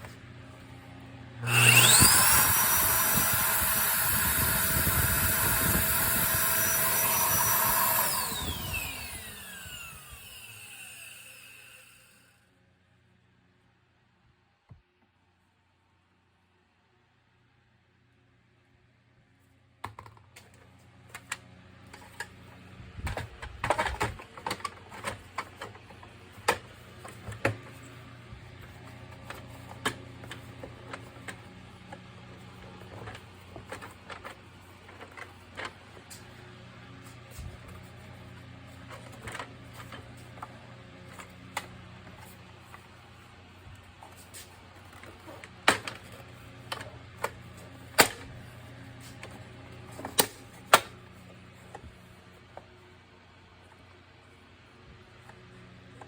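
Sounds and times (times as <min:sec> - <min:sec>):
vacuum cleaner hum: 0:01.2 - 0:12.3.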